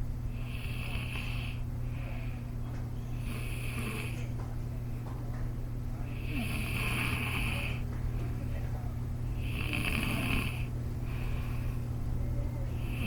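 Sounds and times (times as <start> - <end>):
steady low hum: 0.0 - 13.0
boy snoring: 6.2 - 7.8, 9.4 - 10.7.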